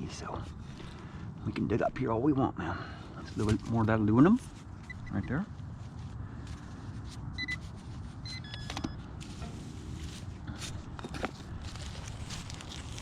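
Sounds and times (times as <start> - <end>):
metal detector beeps: 4.8 - 5.4, 7.4 - 7.6, 8.2 - 9.6.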